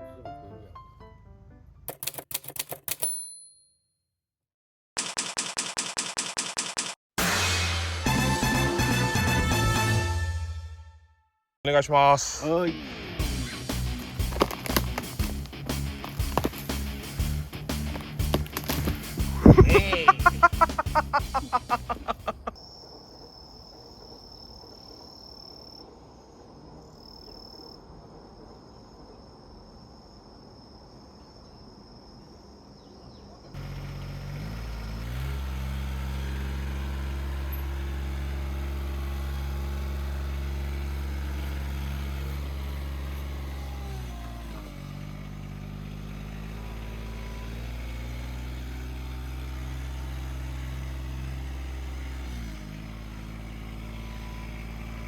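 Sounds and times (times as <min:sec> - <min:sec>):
machine engine running: 0:33.6 - 0:55.0.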